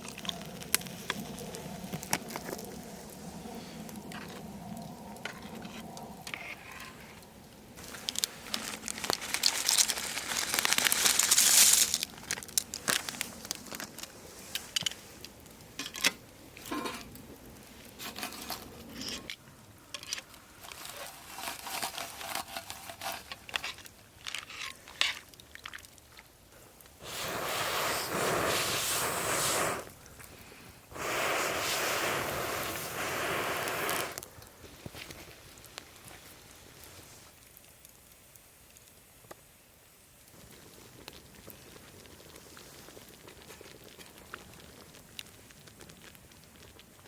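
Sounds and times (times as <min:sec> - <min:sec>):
crinkling and rustling: 0:00.0 - 0:03.2, 0:05.2 - 0:27.0, 0:34.1 - 0:38.2.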